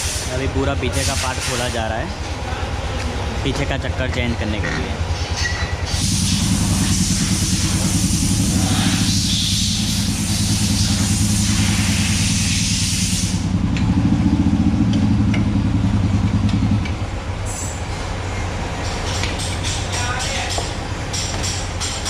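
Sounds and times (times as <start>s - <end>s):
hiss: 0.0s - 1.8s, 5.9s - 13.5s
machine motor pulsing hum: 2.0s - 19.5s.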